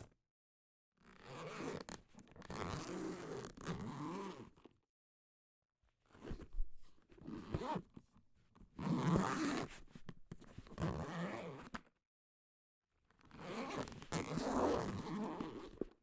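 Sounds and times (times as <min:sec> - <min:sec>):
zipper being pulled: 0:07.3 - 0:07.8, 0:08.8 - 0:09.7, 0:10.8 - 0:11.8, 0:13.3 - 0:15.9.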